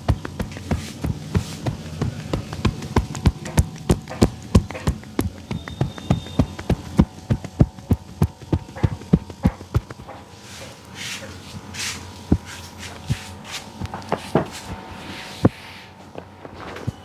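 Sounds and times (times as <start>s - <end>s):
hands slapping in percussive massage: 0.0s - 10.2s.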